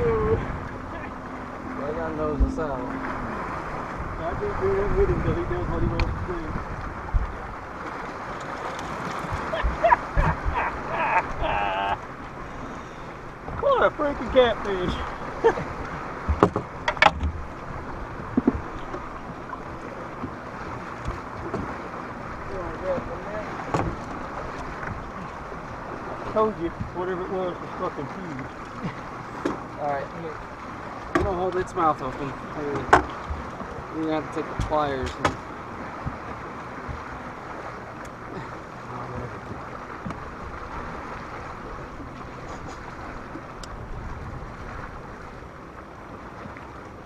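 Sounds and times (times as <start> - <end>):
wind buffeting microphone: 0.0 - 27.6, 32.2 - 46.6
wind and water noise: 0.0 - 47.0
faint clicks: 43.6 - 43.8.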